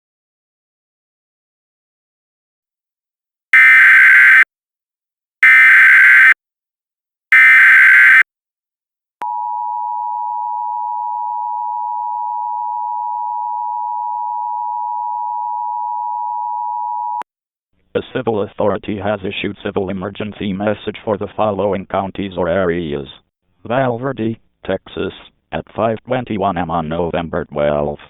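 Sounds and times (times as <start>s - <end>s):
two-tone attention signal: 7.3s - 8.2s.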